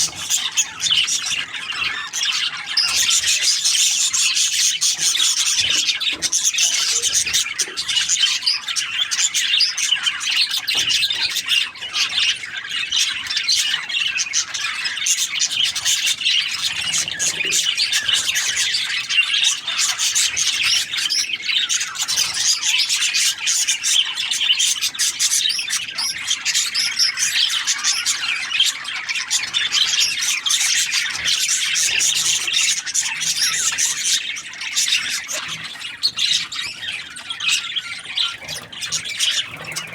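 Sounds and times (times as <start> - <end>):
budgerigars chattering: 0.0 - 39.9.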